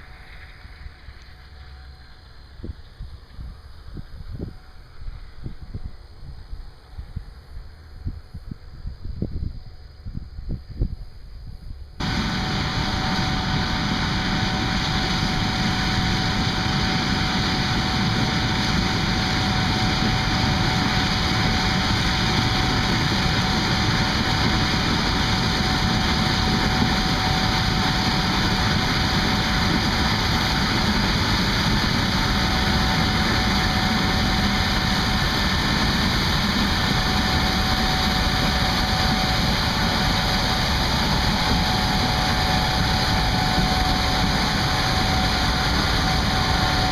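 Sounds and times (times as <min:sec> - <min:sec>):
steady mechanical whine: 0:00.0 - 0:46.9
combine harvester running: 0:12.0 - 0:46.9.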